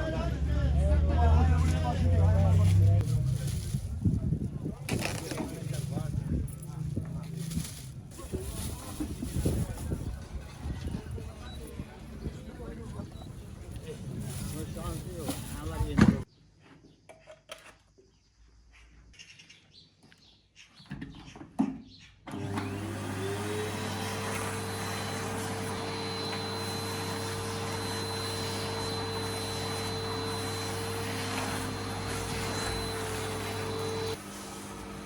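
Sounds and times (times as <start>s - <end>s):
vacuum cleaner running: 22.3s - 35.0s.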